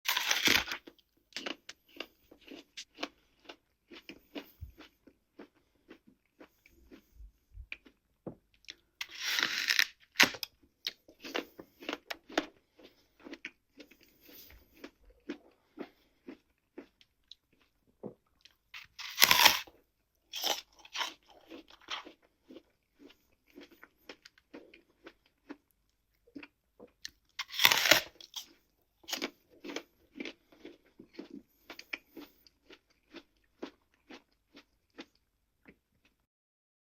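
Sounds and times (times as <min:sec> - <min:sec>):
apple crunching bites: 0:00.1 - 0:07.0, 0:08.6 - 0:12.6, 0:18.4 - 0:25.6, 0:26.4 - 0:35.8
wet crunchy chewing: 0:00.1 - 0:07.1, 0:08.6 - 0:35.8.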